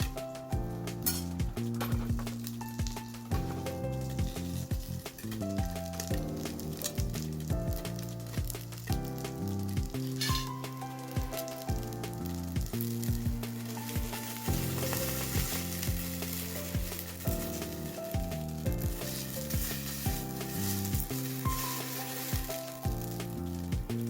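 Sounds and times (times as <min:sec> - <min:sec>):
background music with beat: 0:00.0 - 0:24.0
food sizzling in a pan: 0:09.4 - 0:24.0.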